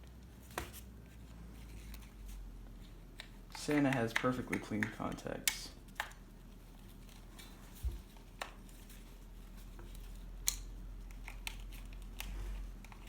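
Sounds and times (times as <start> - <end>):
plastic clicks: 3.2 - 6.2.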